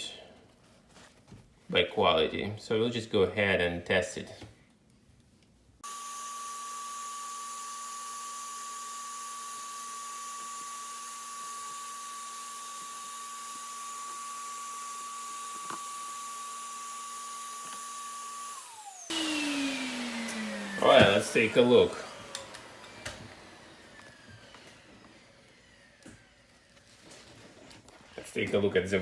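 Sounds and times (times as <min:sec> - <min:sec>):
vacuum motor winding down: 0:05.8 - 0:26.8
vacuum cleaner whining: 0:05.8 - 0:29.0.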